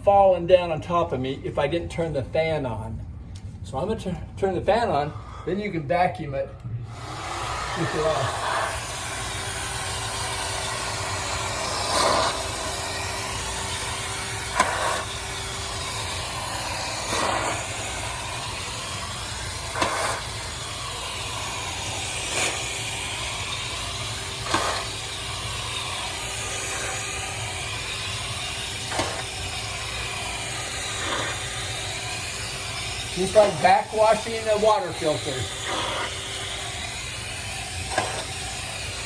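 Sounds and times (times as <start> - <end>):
vacuum cleaner running: 6.5 - 39.0.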